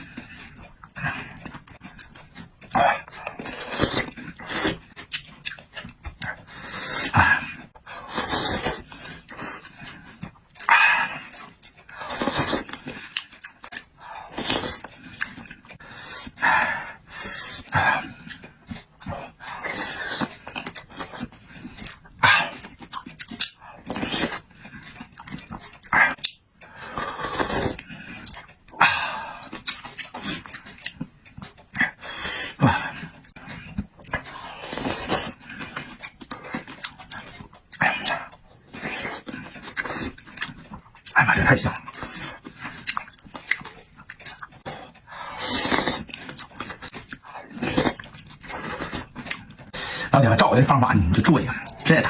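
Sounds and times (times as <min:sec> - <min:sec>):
person chewing noisily: 0:00.0 - 0:52.0.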